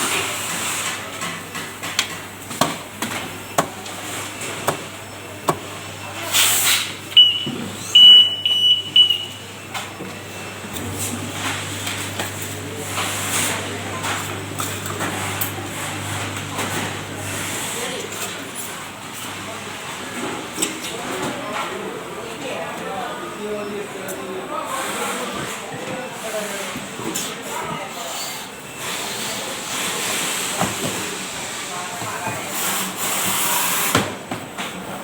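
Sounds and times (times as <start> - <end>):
low machine hum: 7.0 - 19.1
high electronic beep: 7.2 - 9.4.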